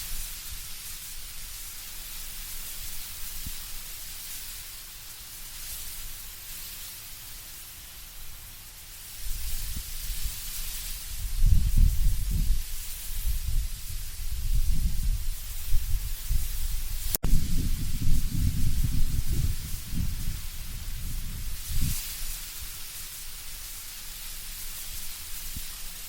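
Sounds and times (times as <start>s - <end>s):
wind rustling leaves: 0.0s - 26.0s
deep gusts of wind: 9.2s - 23.4s.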